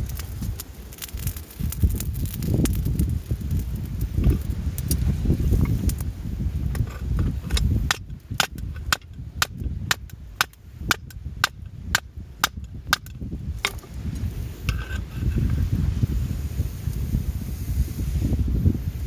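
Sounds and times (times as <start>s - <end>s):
steel fire striker strikes: 6.7s - 13.9s.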